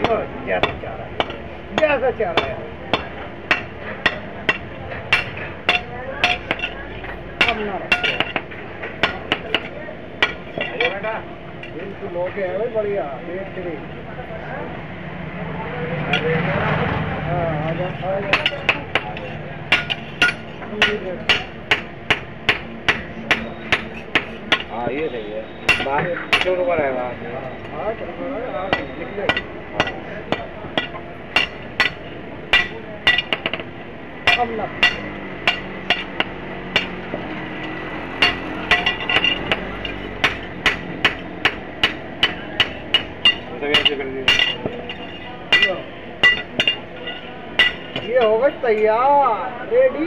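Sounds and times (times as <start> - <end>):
hammer striking metal: 0.0 - 11.0, 16.1 - 16.4, 17.7 - 24.9, 25.5 - 26.8, 28.6 - 48.4.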